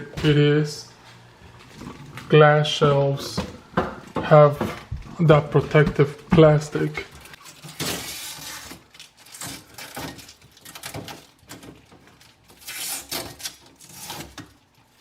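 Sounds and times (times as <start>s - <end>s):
plastic film rustling and scraping: 6.8s - 15.0s.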